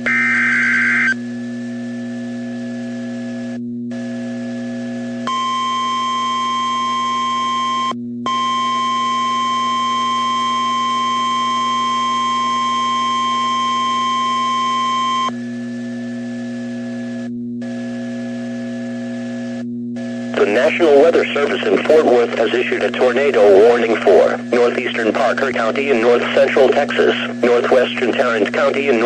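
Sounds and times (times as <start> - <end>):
steady warning alarm beep: 5.3 - 15.3
low radio hum: 15.2 - 29.0.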